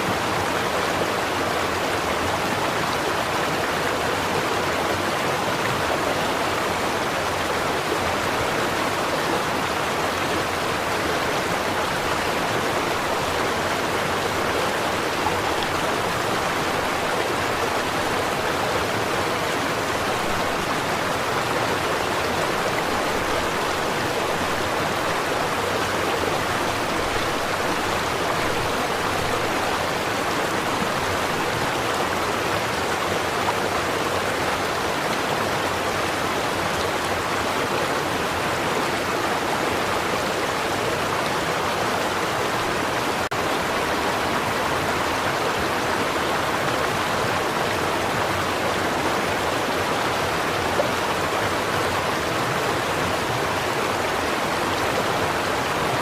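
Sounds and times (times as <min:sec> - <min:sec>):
stream babbling over stones: 0:00.0 - 0:56.0.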